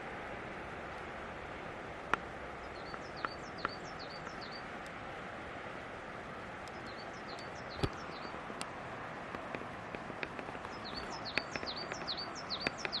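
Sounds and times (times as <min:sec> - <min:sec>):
waterfall rushing: 0:00.0 - 0:13.0
small bird singing: 0:02.6 - 0:04.7, 0:06.7 - 0:08.4, 0:10.6 - 0:13.0.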